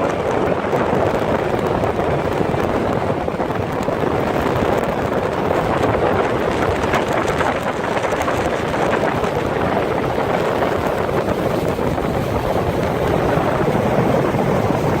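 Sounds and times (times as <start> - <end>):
boat engine and water rush: 0.0 - 15.0
wind buffeting microphone: 0.0 - 15.0.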